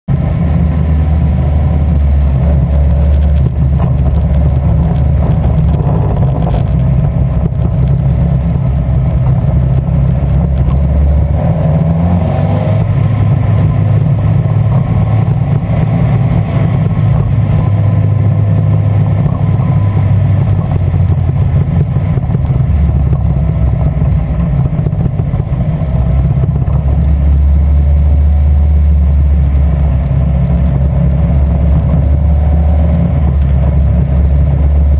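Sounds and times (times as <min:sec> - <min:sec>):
car engine misfiring: 0:00.1 - 0:34.9.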